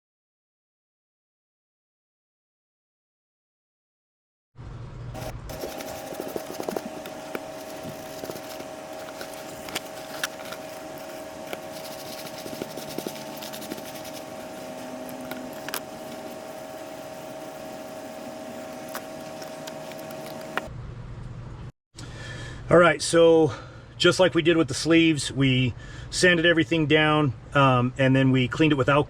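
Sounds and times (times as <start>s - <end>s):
electric sander whining: 5.2s - 20.7s.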